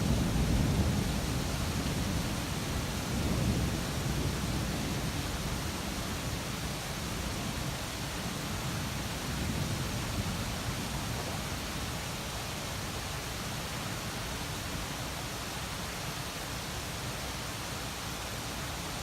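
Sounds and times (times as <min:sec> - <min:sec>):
low rumble of thunder: 0:00.0 - 0:12.4
rain hissing: 0:00.0 - 0:19.0.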